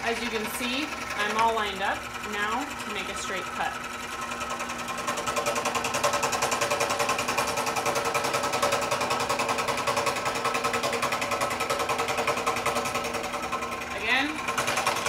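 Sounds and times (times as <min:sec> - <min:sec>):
scroll saw cutting wood: 0:00.0 - 0:15.0.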